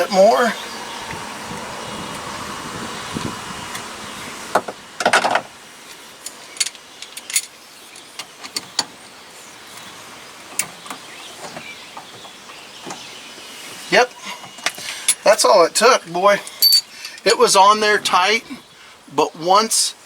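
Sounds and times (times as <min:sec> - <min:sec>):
metal tool clicks and clinks: 0:16.4 - 0:17.3.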